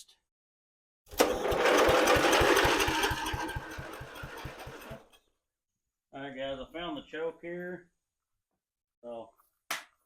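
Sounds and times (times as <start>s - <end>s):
electric starter cranking: 1.1s - 5.1s
lawn mower engine chugging: 1.1s - 5.2s.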